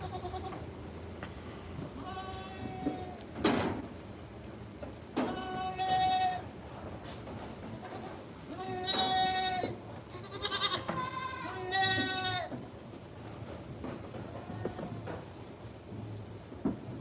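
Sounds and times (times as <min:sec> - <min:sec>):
goat kids bleating: 0:00.0 - 0:00.8, 0:01.9 - 0:03.3, 0:05.2 - 0:06.6, 0:07.6 - 0:12.6.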